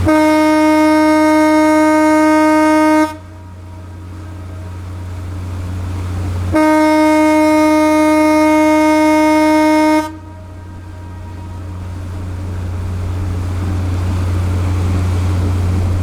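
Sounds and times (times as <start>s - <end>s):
ship's whistle blasts: 0.0s - 5.2s, 6.5s - 12.6s
low steady hum: 0.0s - 16.0s.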